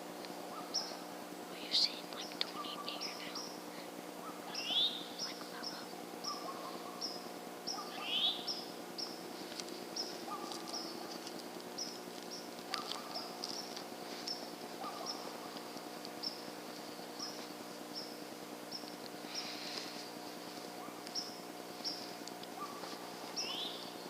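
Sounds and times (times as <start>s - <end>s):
small birds chirping: 0.2s - 24.0s
upward-sweeping bird calls: 4.2s - 9.2s, 11.8s - 20.0s, 20.8s - 24.0s.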